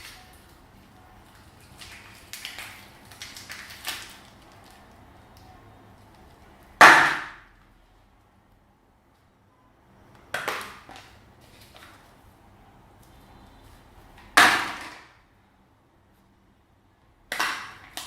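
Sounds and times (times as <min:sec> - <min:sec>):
slime crackling and squishing: 0:01.2 - 0:05.1.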